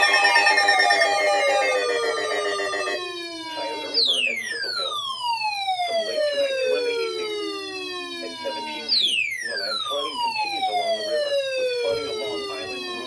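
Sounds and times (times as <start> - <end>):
siren-like falling tone: 0.0 - 3.1.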